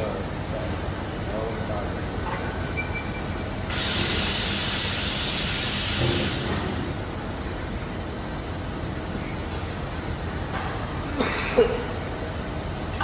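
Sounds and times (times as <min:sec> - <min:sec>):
factory machinery hum: 0:00.0 - 0:13.0
compressed air hissing: 0:03.7 - 0:06.5.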